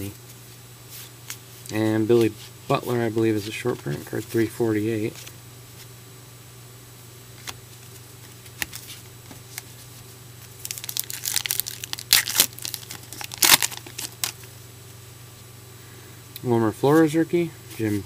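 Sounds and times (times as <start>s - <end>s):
card pack wrapper crinkling: 10.4s - 14.5s.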